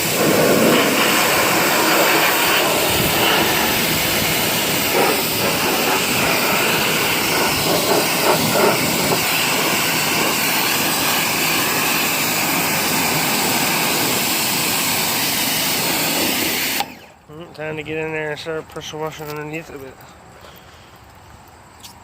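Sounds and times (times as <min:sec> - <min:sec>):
pressure washer spraying: 0:00.0 - 0:17.1.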